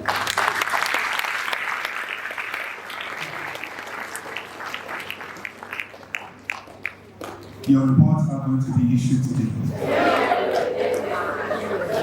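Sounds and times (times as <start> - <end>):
audience applauding: 0.0 - 7.0.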